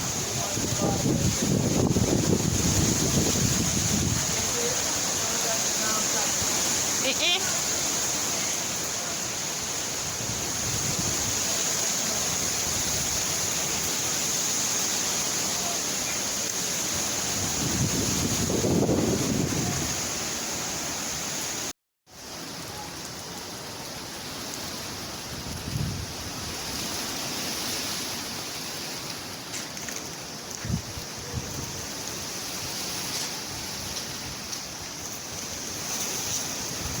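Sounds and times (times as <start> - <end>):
wind rushing: 0.0 - 5.5, 16.8 - 21.6
driving rain: 0.0 - 37.0.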